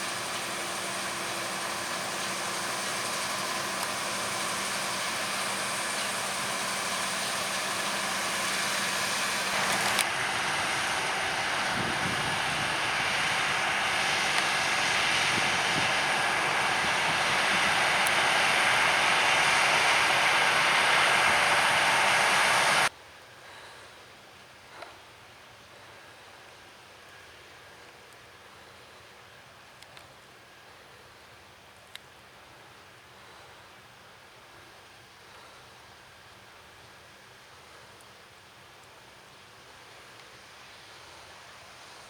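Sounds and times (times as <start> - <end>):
heavy farm machinery running: 0.0 - 22.9.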